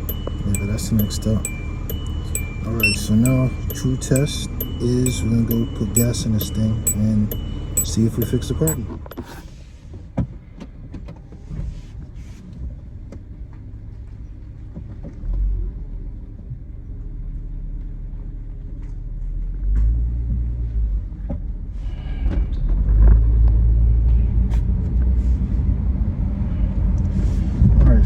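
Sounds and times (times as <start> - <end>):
car engine and road rumble: 0.0 - 9.2.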